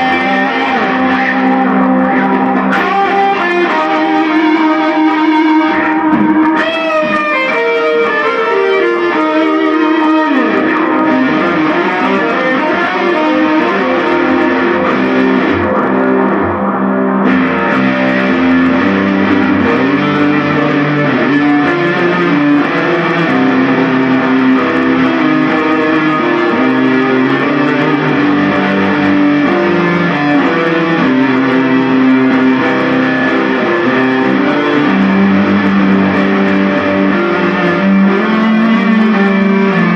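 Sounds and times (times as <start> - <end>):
guitar playing sustained notes: 0.0 - 39.9.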